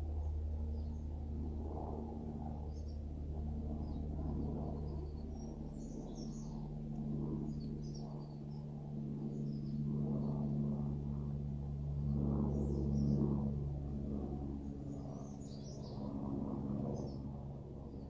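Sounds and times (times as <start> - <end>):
helicopter flying overhead: 0.0 - 18.0
small birds chirping: 3.8 - 6.7, 14.8 - 16.1.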